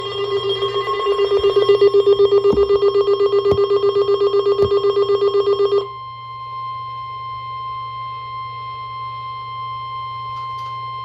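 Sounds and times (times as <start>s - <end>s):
rapidly pulsing electronic tone: 0.0s - 5.9s
steady warning alarm tone: 0.0s - 8.0s.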